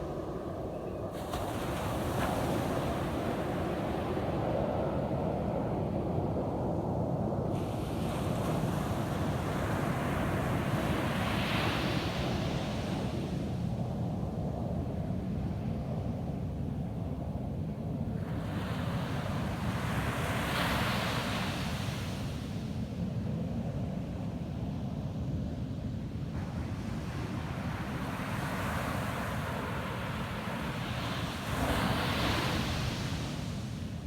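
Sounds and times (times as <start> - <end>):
waves breaking in a hiss: 7.5 - 13.5, 26.4 - 34.0.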